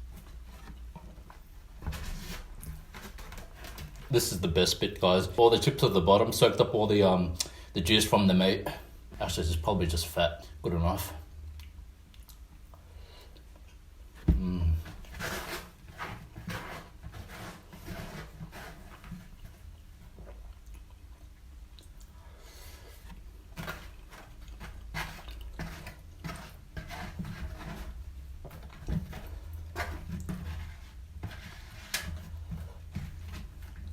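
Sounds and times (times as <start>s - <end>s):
chewing and mouth sounds: 11.5s - 12.6s, 20.2s - 22.2s.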